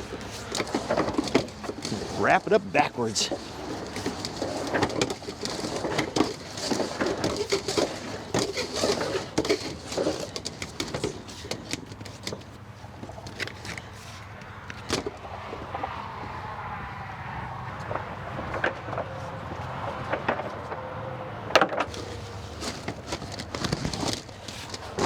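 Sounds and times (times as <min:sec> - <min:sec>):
hose knocking and scraping: 0:00.0 - 0:15.2, 0:21.9 - 0:25.0.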